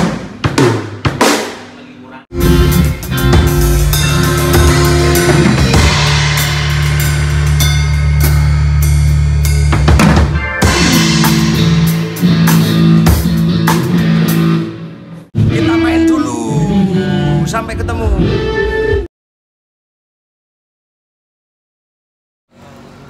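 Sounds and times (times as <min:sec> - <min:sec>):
drum kit with cymbals: 0:00.0 - 0:14.7
held bass notes: 0:02.3 - 0:19.1.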